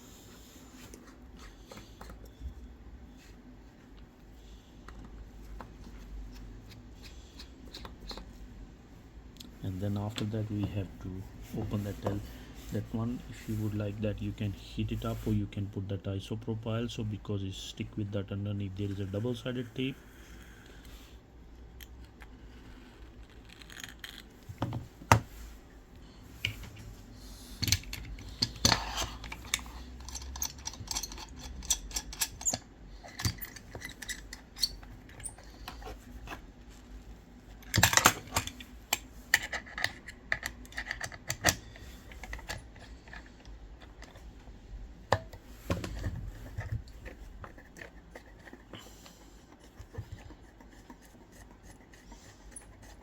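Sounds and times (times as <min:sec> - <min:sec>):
hand tools clicking and scraping: 0:27.6 - 0:36.4.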